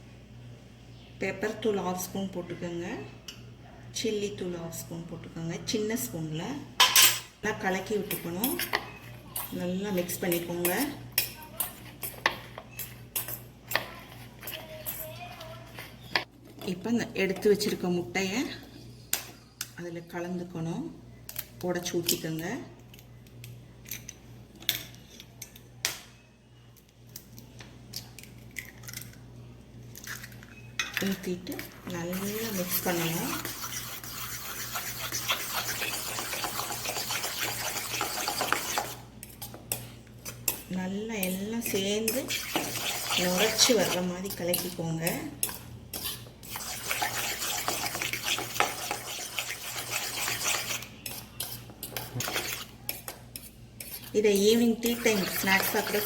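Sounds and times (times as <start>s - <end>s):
fork whisking eggs in a bowl: 7.6s - 16.6s, 31.0s - 56.0s.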